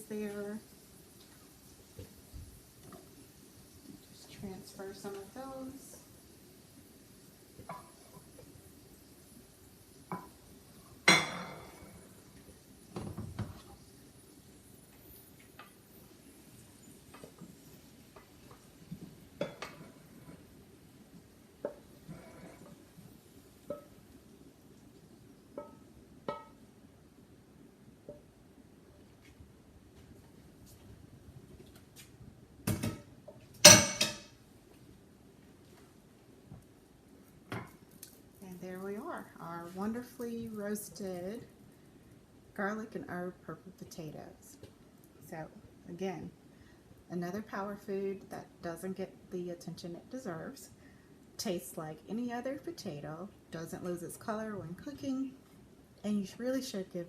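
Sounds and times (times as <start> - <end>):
kitchenware clattering: 11.0 - 11.9, 19.4 - 20.0, 25.6 - 26.6, 32.7 - 34.4
utensil scraping a pot: 22.0 - 22.8
cookware knocking: 25.6 - 26.5, 33.7 - 34.3.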